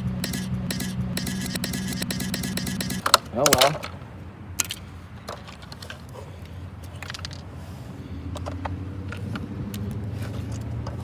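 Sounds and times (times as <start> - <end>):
low motor hum: 0.0 - 3.1.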